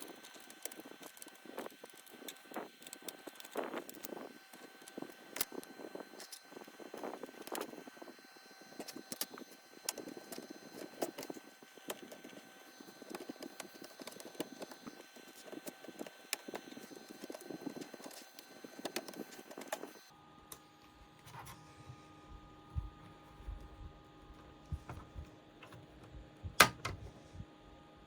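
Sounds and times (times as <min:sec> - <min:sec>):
tools clicking and scraping plastic: 0:00.0 - 0:07.8, 0:08.7 - 0:20.1, 0:24.8 - 0:27.1
steady background hum: 0:00.0 - 0:28.0.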